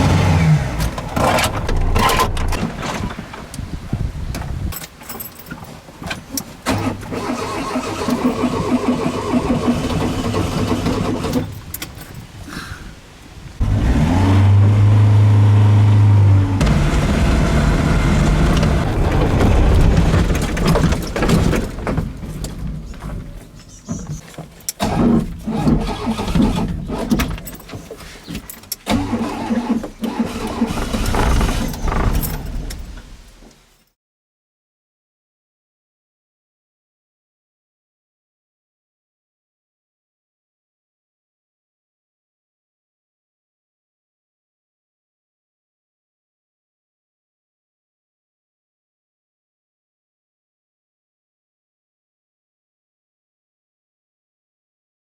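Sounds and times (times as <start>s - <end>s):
engine starter cranking: 0.0s - 3.1s, 6.6s - 11.8s, 16.0s - 23.3s, 24.7s - 33.3s
clicks and rattles: 16.6s - 30.0s.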